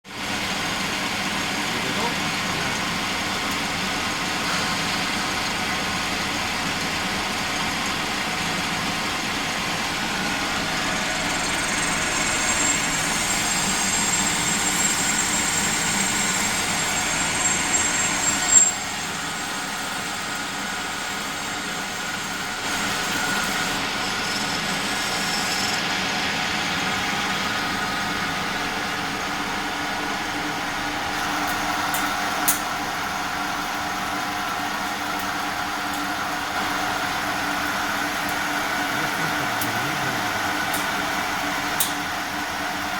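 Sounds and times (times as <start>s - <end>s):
lathe machine hum: 0.1s - 42.9s
lower whine: 9.1s - 20.4s
high whine: 9.4s - 19.8s.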